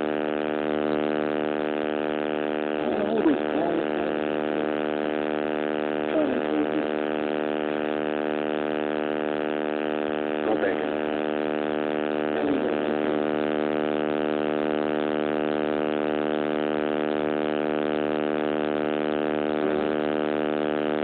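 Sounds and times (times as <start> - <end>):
electrical buzz: 0.0 - 21.0.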